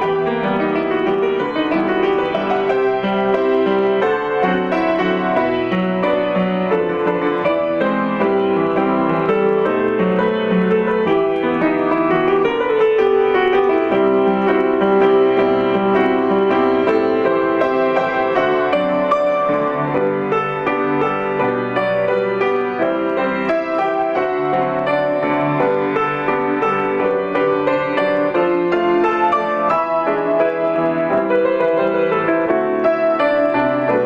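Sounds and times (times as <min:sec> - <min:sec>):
piano-like keyboard melody: 0:00.0 - 0:34.0.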